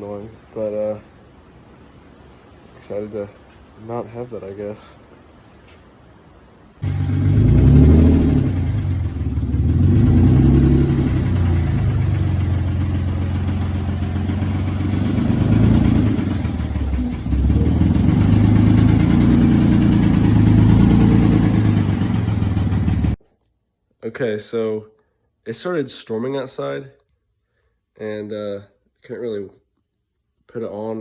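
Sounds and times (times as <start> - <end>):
car engine revving loudly: 6.8 - 23.2.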